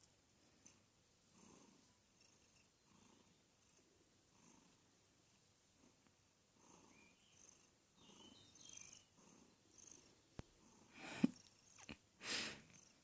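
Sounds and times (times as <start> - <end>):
pet snoring softly: 0.6 - 4.8, 6.6 - 11.9.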